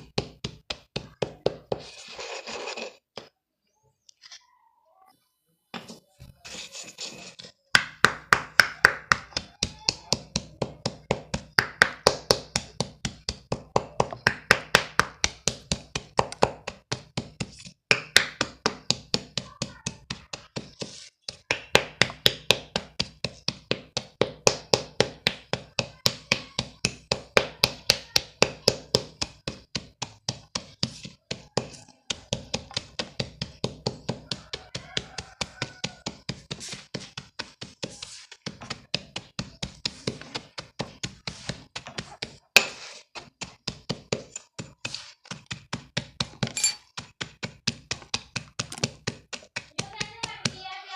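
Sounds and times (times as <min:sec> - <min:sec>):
chalk crumbles crunching: 0:35.0 - 0:43.6.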